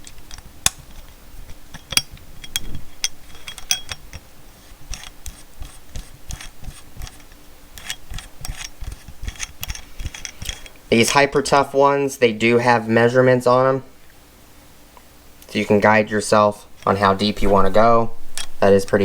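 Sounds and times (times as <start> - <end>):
metallic clicks and scraping: 0.0 - 11.2.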